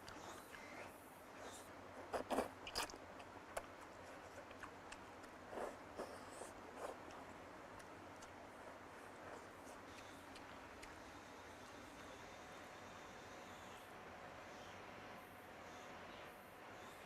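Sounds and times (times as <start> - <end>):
person chewing and biting: 2.1 - 11.0.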